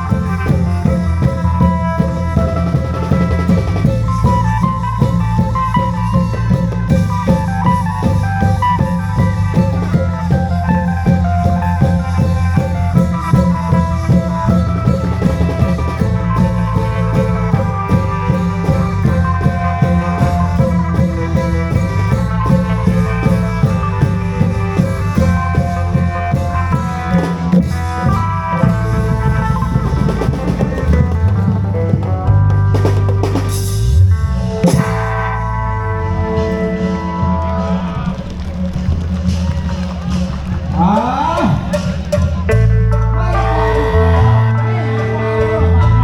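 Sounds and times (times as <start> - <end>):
long drums playing: 0.0 - 46.0.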